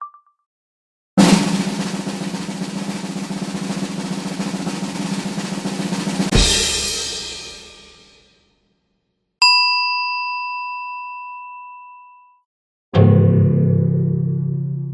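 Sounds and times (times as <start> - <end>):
snare drum roll: 1.2 - 8.2.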